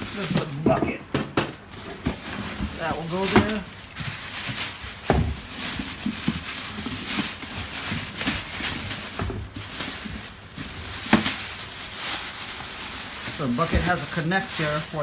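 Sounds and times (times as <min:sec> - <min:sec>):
hard plastic parts knocking: 0:00.0 - 0:04.0
plastic packaging rustling: 0:00.0 - 0:15.0.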